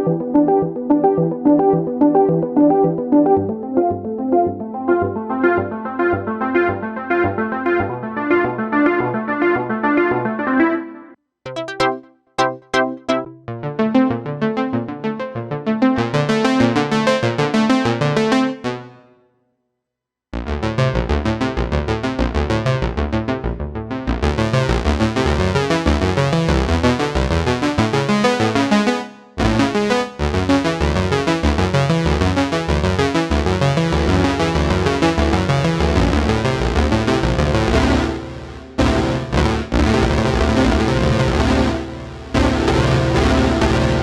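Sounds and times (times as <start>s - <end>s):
synthesizer pulsing chord patterns: 0.0s - 19.2s, 20.4s - 44.0s.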